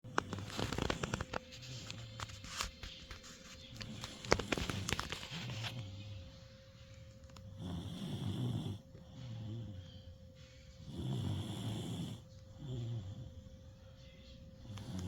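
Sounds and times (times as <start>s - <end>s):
clicks and rustles: 0.0s - 5.8s
person snoring softly: 7.5s - 13.9s, 14.6s - 15.0s.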